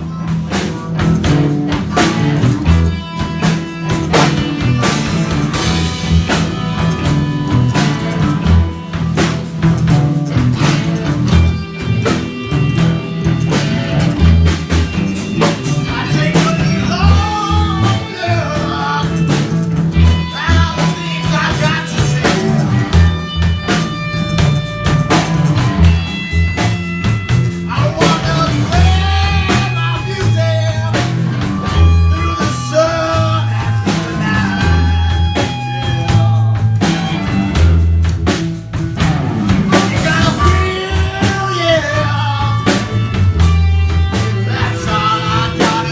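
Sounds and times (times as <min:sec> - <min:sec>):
drum kit beat: 0:00.0 - 0:45.9
electric guitar: 0:00.0 - 0:45.9
live band playing blues-rock: 0:00.0 - 0:45.9.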